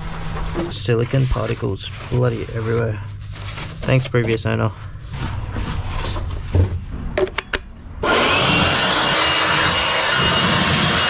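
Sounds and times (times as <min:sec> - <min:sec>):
electric air blower running: 0:08.0 - 0:11.0.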